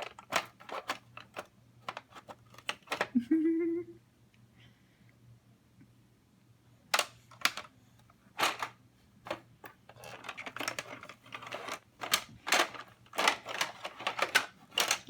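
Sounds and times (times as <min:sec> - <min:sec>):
plastic toy tools clacking: 0:00.0 - 0:03.1, 0:08.4 - 0:08.7, 0:09.3 - 0:15.0.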